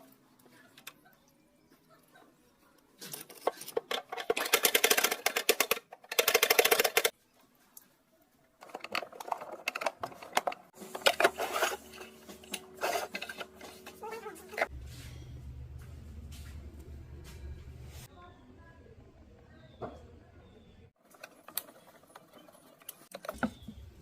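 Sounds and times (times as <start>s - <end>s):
clicking and scraping of hand work: 2.8s - 7.9s, 8.6s - 14.7s, 21.0s - 24.0s.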